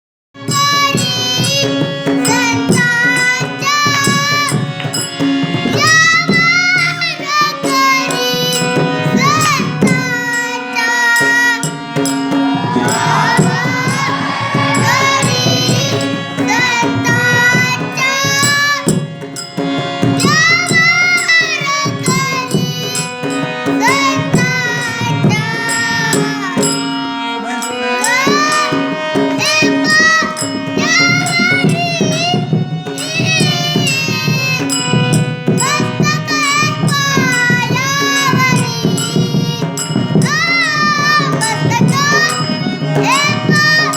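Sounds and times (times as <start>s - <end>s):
held drone: 0.5s - 43.9s
drum strokes: 8.4s - 27.0s
person singing ornamented phrases: 9.3s - 18.9s, 40.3s - 43.9s.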